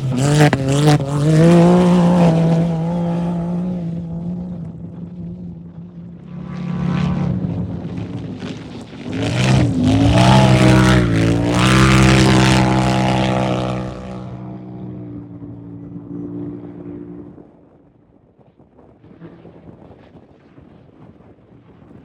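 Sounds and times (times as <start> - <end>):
race car engine revving: 0.0 - 5.8, 6.4 - 17.4.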